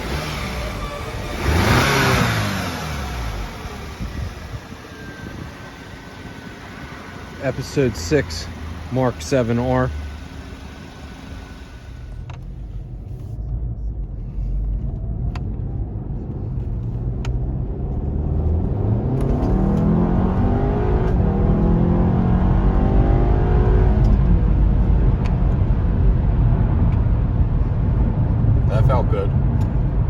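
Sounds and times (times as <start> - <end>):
car engine accelerating: 0.0 - 30.0.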